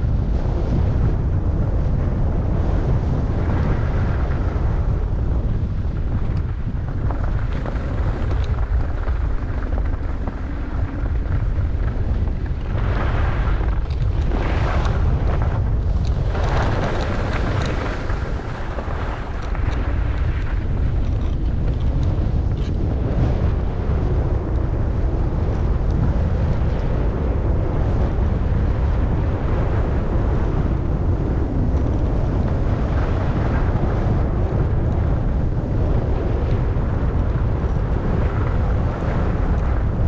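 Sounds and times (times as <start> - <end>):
wind buffeting microphone: 0.0 - 40.0
skis sliding over snow: 2.6 - 24.4.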